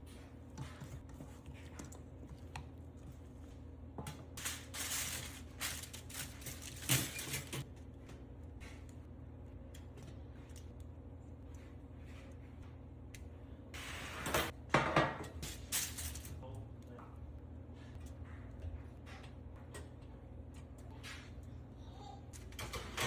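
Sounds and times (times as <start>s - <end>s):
steady low hum: 0.0s - 14.7s
rustling and scraping: 4.3s - 7.7s.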